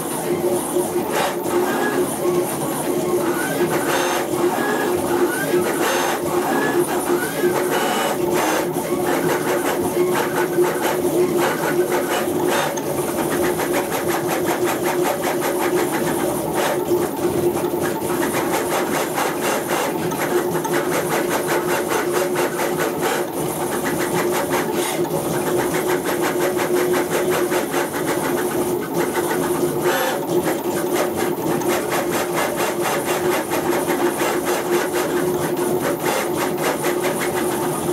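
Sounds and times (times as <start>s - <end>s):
stepper motors whining: 3.2s - 9.5s.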